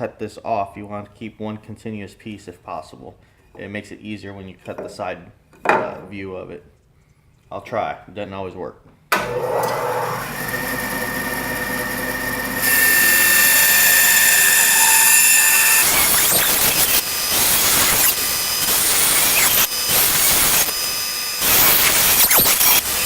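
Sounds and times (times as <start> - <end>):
bandsaw running: 9.2 - 23.0
saw blade cutting wood: 9.2 - 23.0.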